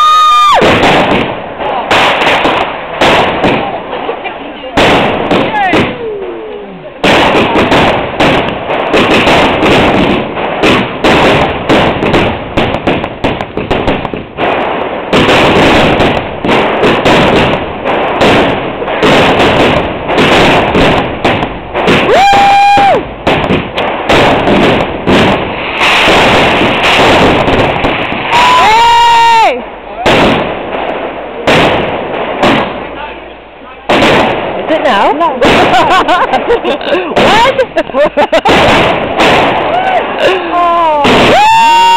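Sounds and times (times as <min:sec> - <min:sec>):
fireworks bangs and crackling: 0:00.0 - 0:41.9
firework whistle: 0:21.9 - 0:23.1.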